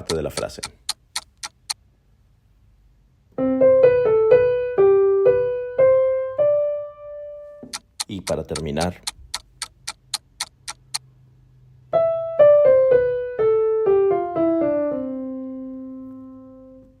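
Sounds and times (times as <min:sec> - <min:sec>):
sharp even clicks: 0:00.0 - 0:01.8, 0:07.6 - 0:11.1
keyboard piano melody: 0:03.3 - 0:08.8, 0:11.9 - 0:17.0.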